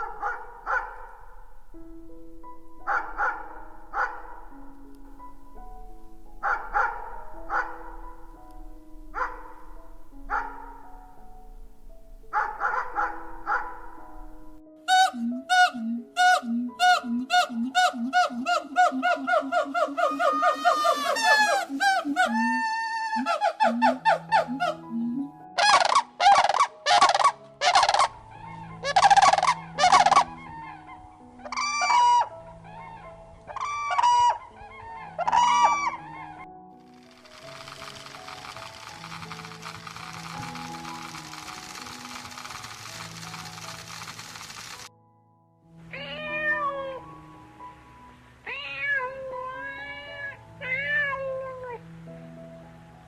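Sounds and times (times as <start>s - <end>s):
turkey gobbling: 0.0s - 1.4s, 2.9s - 4.4s, 6.4s - 8.0s, 12.3s - 14.0s, 14.9s - 28.2s, 28.8s - 30.4s, 31.4s - 32.3s, 33.5s - 36.0s
honking bird calls: 0.0s - 1.8s, 2.8s - 5.3s, 6.4s - 8.4s, 9.1s - 11.3s, 12.3s - 36.1s
soft background music: 0.0s - 53.0s
hissy noise: 19.8s - 22.9s, 36.9s - 44.9s
cat meowing: 45.9s - 47.1s, 48.5s - 51.8s.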